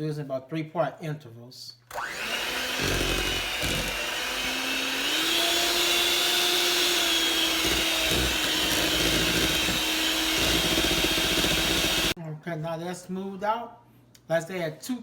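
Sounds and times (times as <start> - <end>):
electric mixer running: 1.9 - 12.2.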